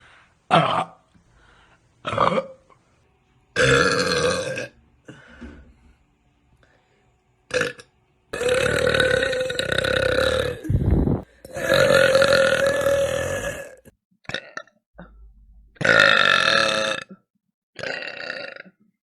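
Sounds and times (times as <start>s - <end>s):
women burping: 0.5s - 1.1s, 2.0s - 2.6s, 3.6s - 4.8s, 11.4s - 15.2s.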